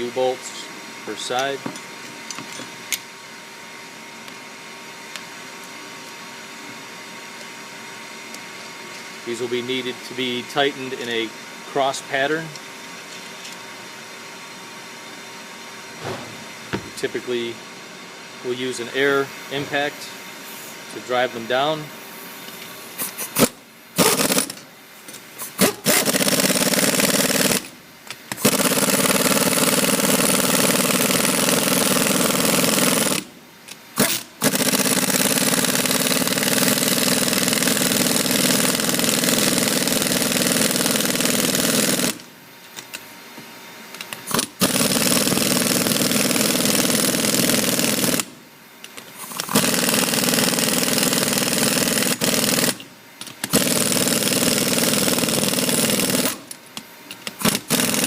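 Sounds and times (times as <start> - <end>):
air impact wrench bursts: 16.0 - 17.1, 23.0 - 24.6, 25.4 - 27.7, 28.3 - 33.3, 34.0 - 42.3, 44.3 - 48.3, 49.2 - 56.5, 57.3 - 58.0.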